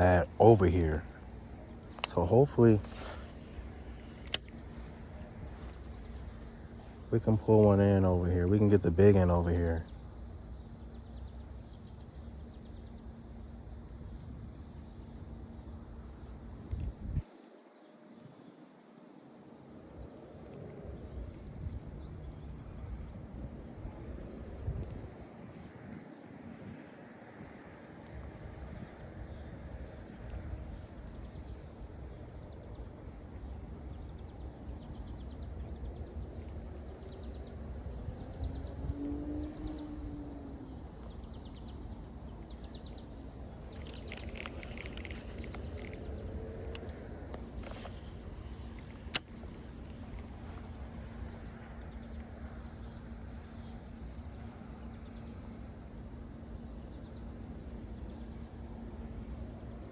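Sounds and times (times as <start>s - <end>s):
insects buzzing: 0.0s - 59.9s
sharp click: 1.9s - 4.6s, 43.7s - 50.4s.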